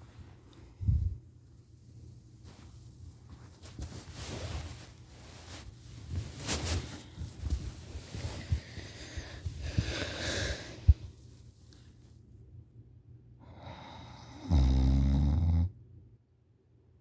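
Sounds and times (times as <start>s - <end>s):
person snoring: 13.4s - 15.7s.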